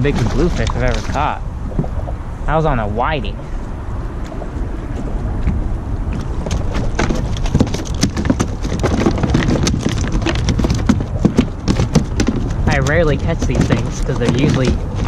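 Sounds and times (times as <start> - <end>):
wind and water rumble: 0.0 - 15.0
fish flopping against kayak: 4.2 - 15.0.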